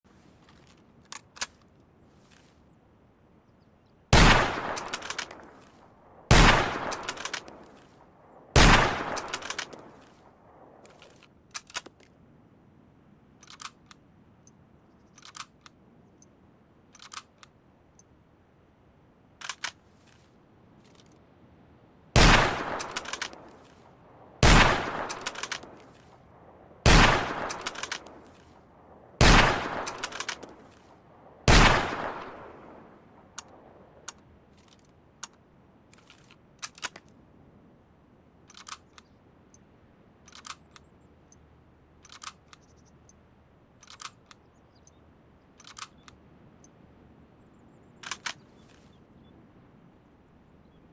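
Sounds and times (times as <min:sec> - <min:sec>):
rifle shots echoing: 0:04.1 - 0:05.6, 0:06.2 - 0:07.8, 0:08.6 - 0:10.1, 0:22.2 - 0:23.5, 0:24.4 - 0:25.9, 0:26.8 - 0:28.3, 0:29.2 - 0:30.7, 0:31.4 - 0:32.9
metallic clicks and clacks: 0:04.7 - 0:05.7, 0:09.1 - 0:10.1, 0:22.7 - 0:23.8, 0:24.9 - 0:26.1, 0:27.3 - 0:28.5, 0:29.8 - 0:30.8.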